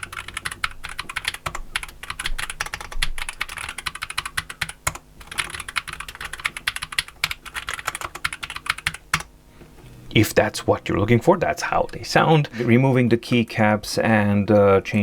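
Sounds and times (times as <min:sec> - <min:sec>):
mechanical keyboard typing: 0:00.0 - 0:09.3.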